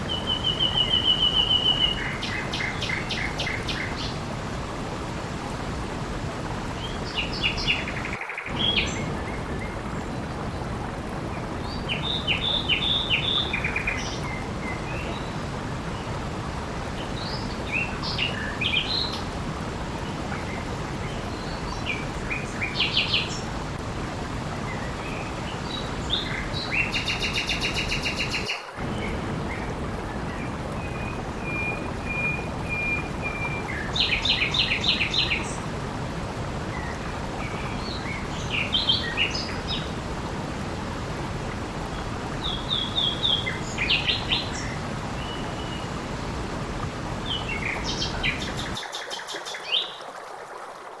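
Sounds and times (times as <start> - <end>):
small birds singing: 0.0 - 4.2, 6.8 - 9.8, 11.6 - 15.4, 24.6 - 35.7, 36.7 - 40.0, 41.9 - 46.3, 47.2 - 50.0
running water: 0.0 - 51.0.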